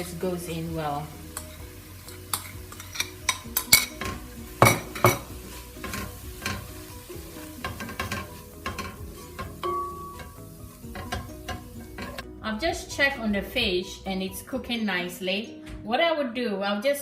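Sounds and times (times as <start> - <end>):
light sizzle: 0.0 - 12.2
utensil stirring in frying pan: 0.2 - 12.2.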